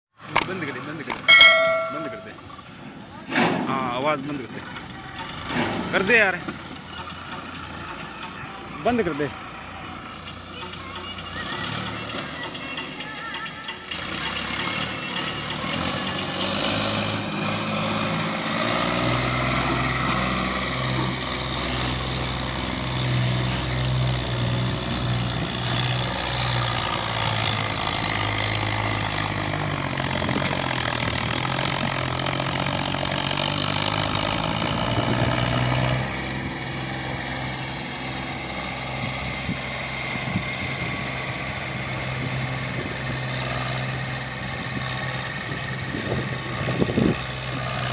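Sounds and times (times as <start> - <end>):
tractor diesel engine under load: 2.4 - 47.9.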